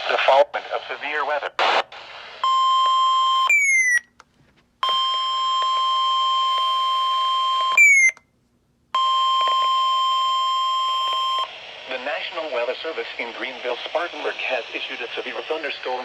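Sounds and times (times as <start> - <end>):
weather radio alarm beep: 2.4 - 4.1, 4.8 - 8.2, 9.0 - 11.5
short falling chirp: 3.5 - 4.0, 7.8 - 8.2.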